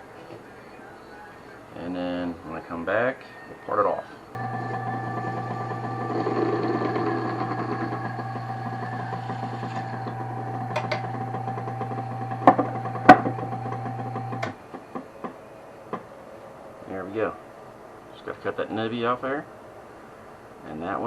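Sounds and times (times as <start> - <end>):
wood lathe motor hum: 4.4 - 14.6
sharp clicks and knocks: 4.6 - 16.1.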